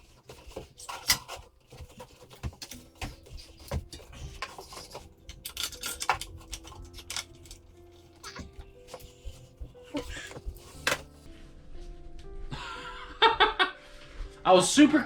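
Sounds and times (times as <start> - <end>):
tools and parts knocking: 0.0 - 11.1
hands working on bicycle wheel: 0.0 - 11.3.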